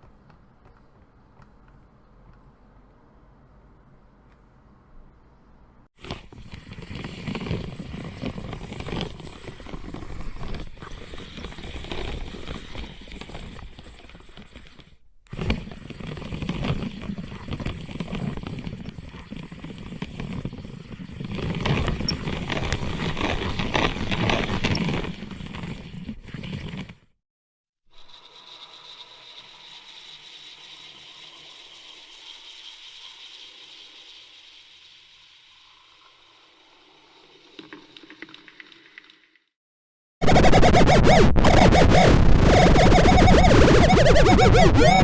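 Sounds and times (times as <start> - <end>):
spinner whirring and clicking: 28.0 - 36.7.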